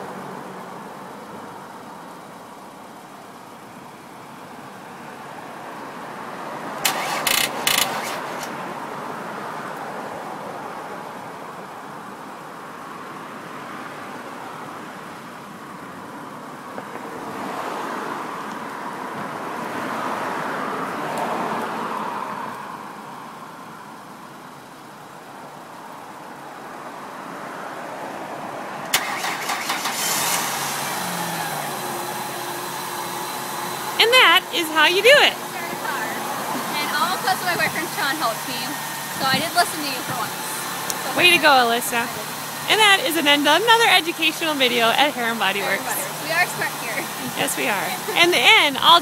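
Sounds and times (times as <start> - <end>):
car engine running: 6.8 - 8.8, 29.0 - 49.0.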